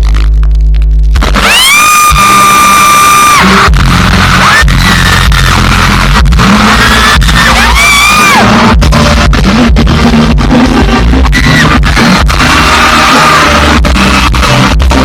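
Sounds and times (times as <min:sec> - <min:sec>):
band with heavy beats: 0:00.0 - 0:15.0.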